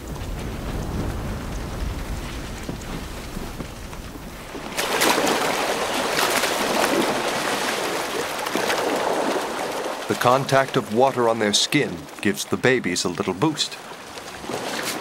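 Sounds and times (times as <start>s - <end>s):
elephants splashing water: 4.2s - 12.3s, 13.8s - 15.0s.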